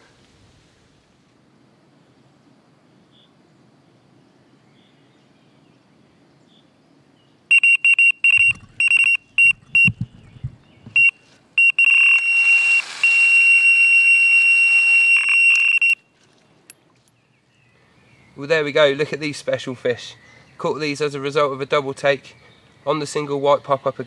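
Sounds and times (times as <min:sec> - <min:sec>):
electronic bite alarm bleeping: 0:07.5 - 0:10.0, 0:10.9 - 0:16.0.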